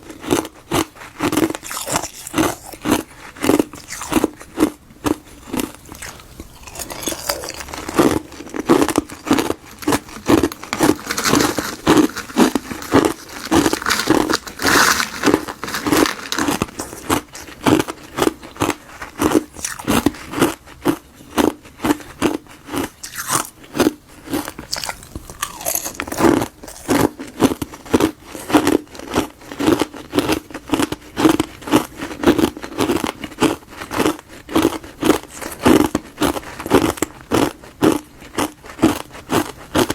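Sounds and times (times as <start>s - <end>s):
ice being chewed: 0.0s - 39.9s.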